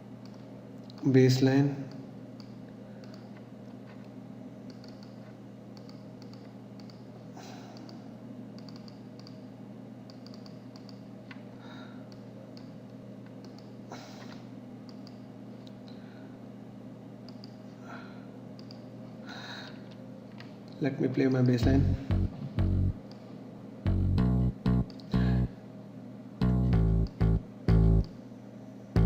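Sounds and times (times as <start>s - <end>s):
low electrical hum: 0.0s - 29.0s
computer mouse clicks: 0.2s - 1.1s, 1.9s - 4.1s, 4.7s - 7.1s, 7.8s - 8.0s, 8.6s - 9.4s, 10.1s - 11.4s, 12.1s - 15.2s, 17.3s - 17.6s, 18.6s - 18.9s
keyboard clicks: 4.7s - 7.0s, 8.6s - 9.4s, 10.1s - 11.0s, 24.7s - 25.2s.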